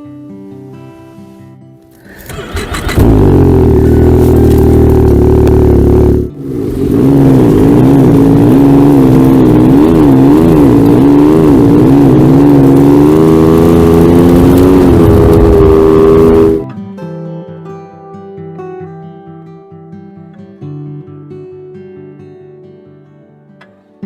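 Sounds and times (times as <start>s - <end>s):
snowmobile engine revving: 2.1s - 16.6s.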